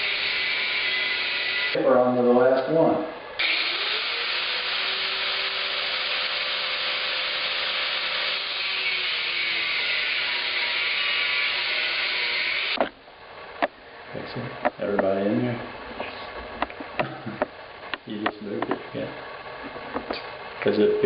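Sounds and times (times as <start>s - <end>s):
grinder cutting metal: 0.0s - 1.8s, 3.4s - 12.8s.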